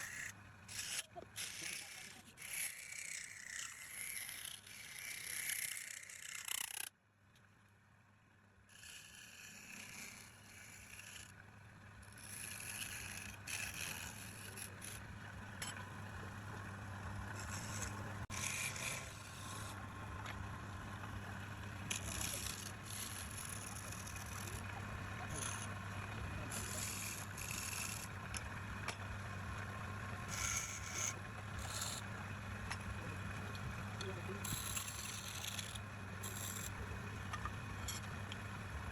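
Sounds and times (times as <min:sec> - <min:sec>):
cutting tool scraping wood: 0:00.0 - 0:06.9, 0:12.2 - 0:15.0, 0:17.2 - 0:20.4, 0:21.9 - 0:25.8, 0:26.4 - 0:29.0, 0:30.3 - 0:32.1, 0:33.6 - 0:38.1
wood lathe motor hum: 0:00.0 - 0:06.9, 0:08.7 - 0:11.4, 0:12.0 - 0:38.9.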